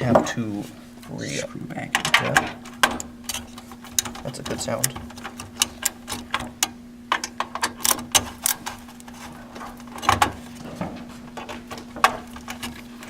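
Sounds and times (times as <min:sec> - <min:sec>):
steady low hum: 0:00.7 - 0:02.2.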